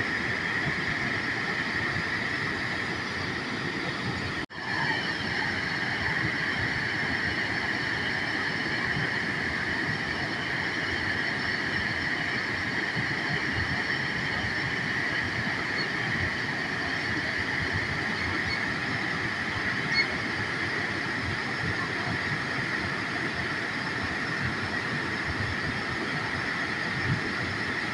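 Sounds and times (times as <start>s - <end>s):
high-pitched ringing drone: 0.0s - 27.9s
waterfall rushing: 3.0s - 22.6s.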